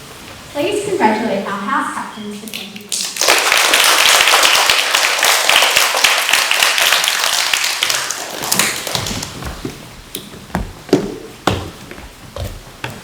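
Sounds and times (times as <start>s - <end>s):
audience applauding: 2.9s - 9.5s.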